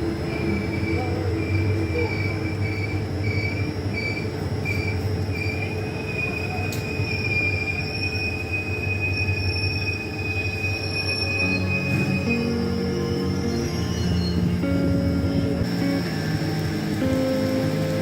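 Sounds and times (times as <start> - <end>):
steel wheels squealing: 0.0 - 16.0
train rumbling over rails: 0.0 - 18.0.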